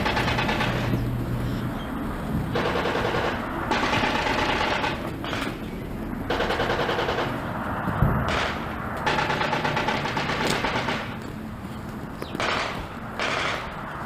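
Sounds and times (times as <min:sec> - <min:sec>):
machine-gun fire bursts: 0:00.0 - 0:01.0, 0:02.5 - 0:05.6, 0:06.3 - 0:07.5, 0:08.3 - 0:11.2, 0:12.4 - 0:13.7.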